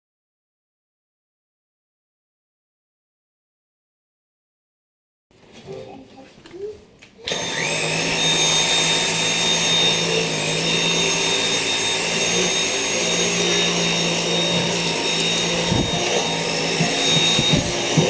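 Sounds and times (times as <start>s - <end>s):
vacuum cleaner running: 7.2s - 18.0s.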